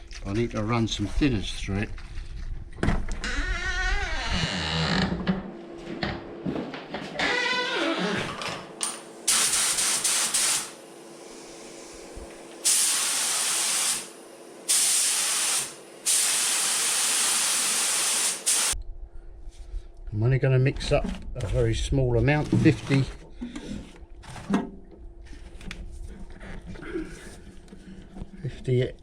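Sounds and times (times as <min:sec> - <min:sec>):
spray gun hissing: 0:09.3 - 0:10.8, 0:12.6 - 0:18.8.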